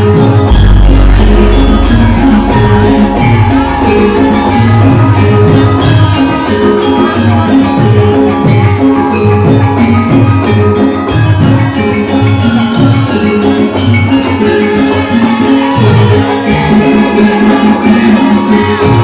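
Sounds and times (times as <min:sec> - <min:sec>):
gamelan ensemble playing: 0:00.0 - 0:19.0
deep low boom: 0:00.5 - 0:06.4.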